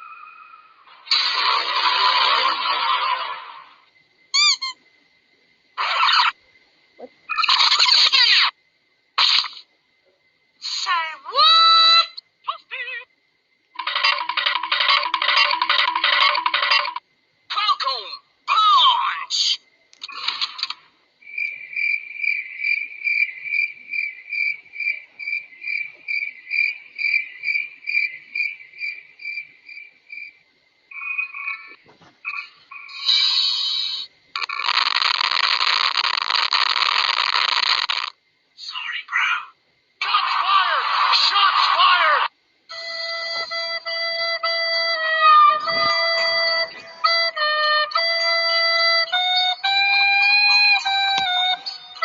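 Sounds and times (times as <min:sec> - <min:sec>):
cricket chirping: 0:00.0 - 0:52.0
flute-like melody: 0:42.7 - 0:52.0.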